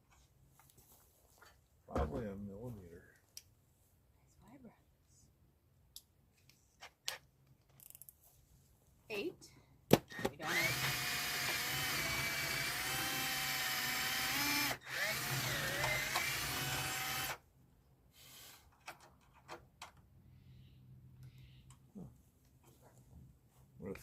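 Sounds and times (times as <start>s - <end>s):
power drill drilling out rivet: 10.1s - 17.4s.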